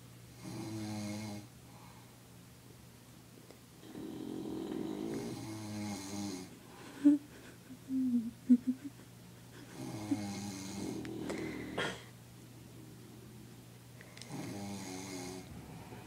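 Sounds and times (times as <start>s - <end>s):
person snoring: 3.8s - 7.2s, 9.7s - 12.1s, 14.2s - 15.5s.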